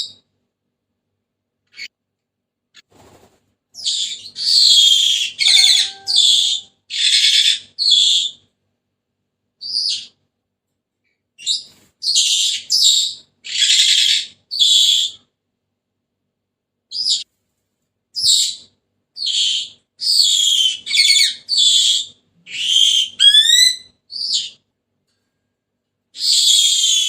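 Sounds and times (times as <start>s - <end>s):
parrot harsh high-pitched calls: 4.4s - 7.7s, 12.1s - 15.2s, 19.2s - 24.5s.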